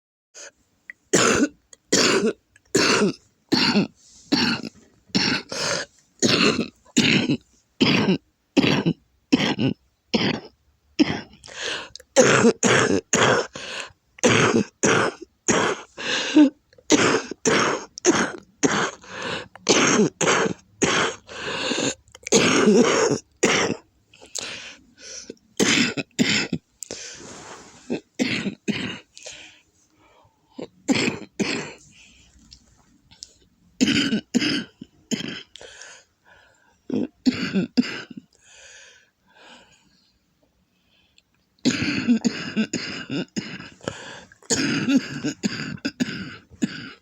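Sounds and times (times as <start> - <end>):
woman coughing: 1.2 - 11.4, 12.2 - 13.5, 14.2 - 19.0, 19.7 - 21.2, 22.3 - 23.8, 25.6 - 26.6, 27.9 - 29.1, 30.8 - 31.8, 33.8 - 35.5, 36.9 - 38.2, 41.6 - 43.8, 44.4 - 47.0.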